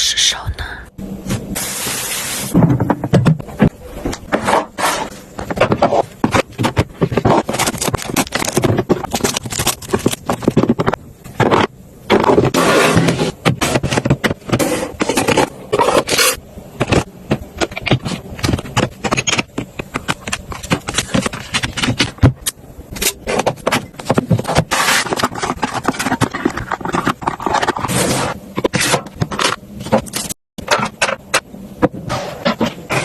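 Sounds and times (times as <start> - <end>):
household items clicking and scraping: 2.5 - 33.0.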